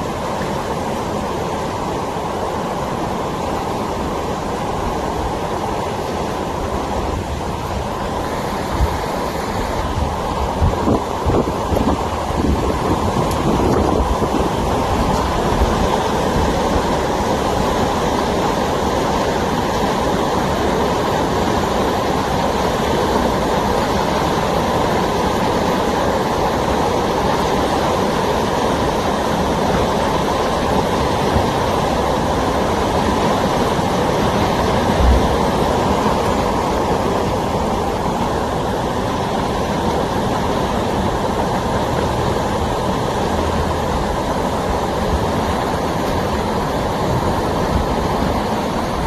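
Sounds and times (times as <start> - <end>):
rushing floodwater: 0.0 - 49.0
torrential rain: 0.0 - 49.0
low thump: 35.0 - 35.5.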